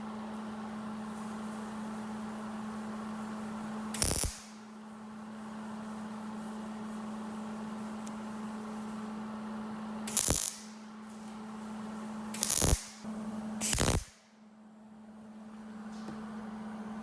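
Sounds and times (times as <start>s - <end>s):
steady hum: 0.0s - 17.0s
welding crackle: 3.9s - 4.8s, 10.1s - 13.0s, 13.6s - 14.2s.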